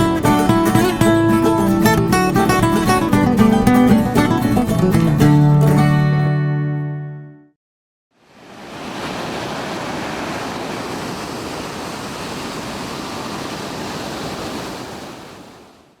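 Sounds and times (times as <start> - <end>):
ocean waves breaking: 8.2 - 16.0.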